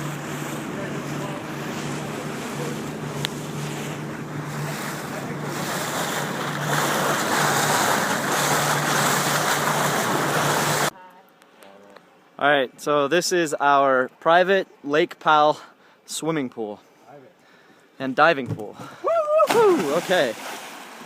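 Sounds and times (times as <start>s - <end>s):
boat engine drone: 0.0s - 10.9s
water rushing: 0.0s - 10.9s, 19.4s - 21.0s.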